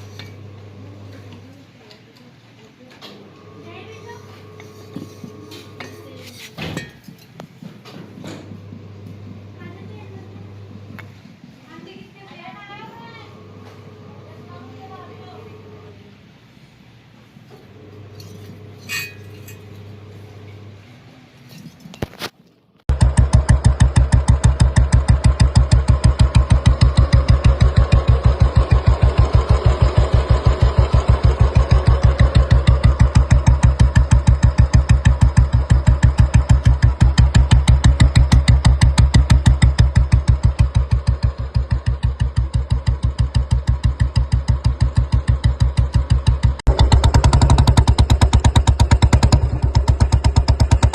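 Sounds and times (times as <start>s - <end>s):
single-cylinder engine thumping: 22.9s - 50.9s.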